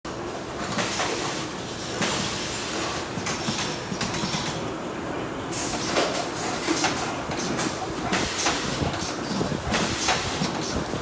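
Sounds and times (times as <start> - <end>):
can-line machinery running: 6.4 - 11.0.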